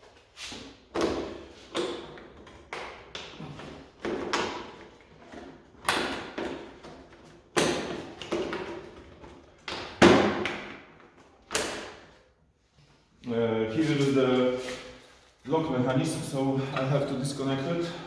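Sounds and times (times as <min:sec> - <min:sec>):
plastic panels knocking and clattering: 0:01.0 - 0:10.8.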